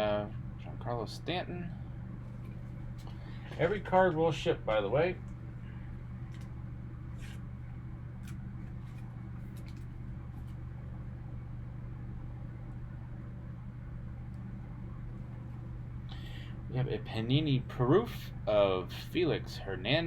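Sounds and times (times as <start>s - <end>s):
low room hum: 0.0s - 20.0s
trading cards rustling: 7.1s - 7.4s, 8.2s - 10.6s.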